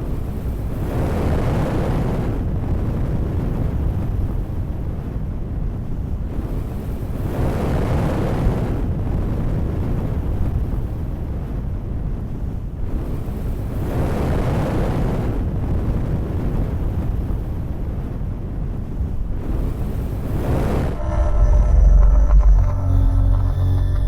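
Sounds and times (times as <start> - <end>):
rushing wind-like noise: 0.0 - 24.0
deep continuous rumble: 18.4 - 24.0.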